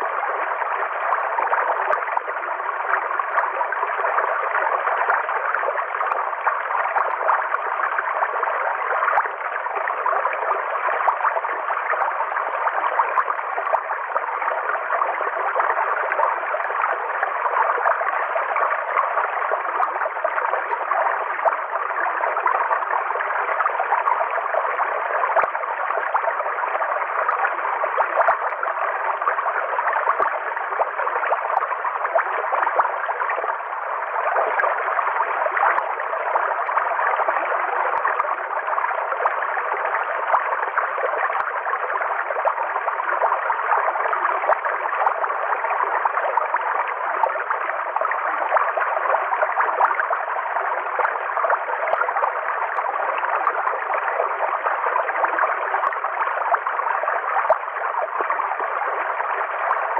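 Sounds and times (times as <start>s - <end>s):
river water flowing and gurgling: 0.0s - 59.9s.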